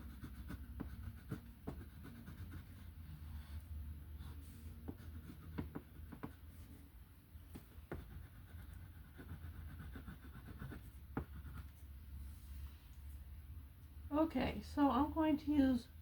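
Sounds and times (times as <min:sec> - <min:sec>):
colouring tool scratching paper: 0:00.0 - 0:02.9, 0:07.9 - 0:11.8
steady low hum: 0:00.0 - 0:16.0.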